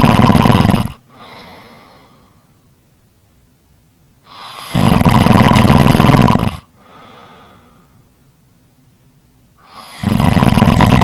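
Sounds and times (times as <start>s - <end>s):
faint snoring breath: 0.0s - 2.5s, 4.2s - 8.0s, 9.6s - 11.0s.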